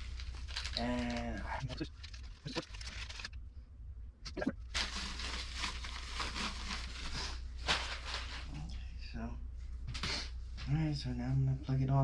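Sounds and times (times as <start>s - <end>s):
packaging rustling: 0.0s - 3.4s, 4.6s - 8.6s
low hum: 0.0s - 12.0s.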